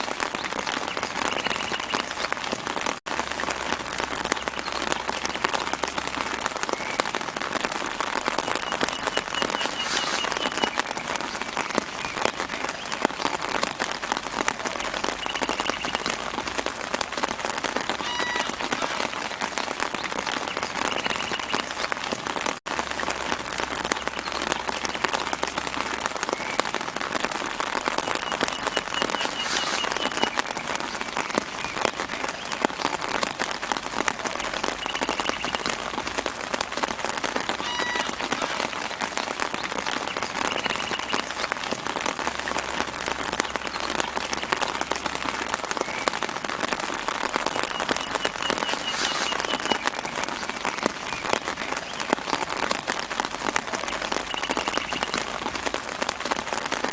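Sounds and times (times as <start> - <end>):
rain falling on leaves: 0.0 - 56.9.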